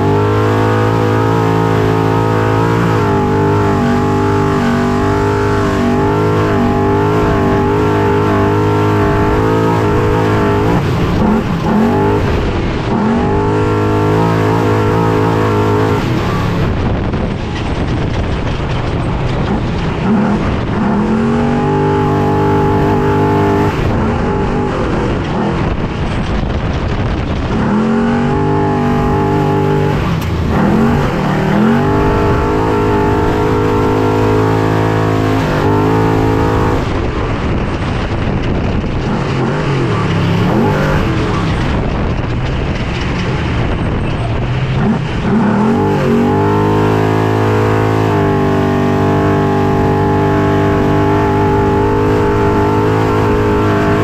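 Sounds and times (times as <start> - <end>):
truck engine revving: 0.0 - 54.0
truck knocking over rough ground: 0.0 - 54.0.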